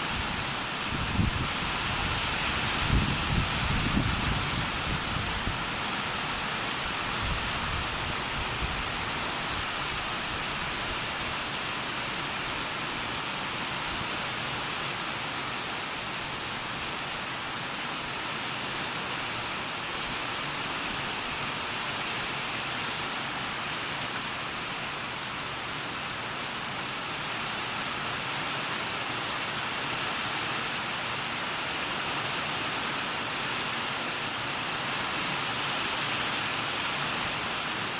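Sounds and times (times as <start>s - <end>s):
heavy rain hissing: 0.0s - 13.9s.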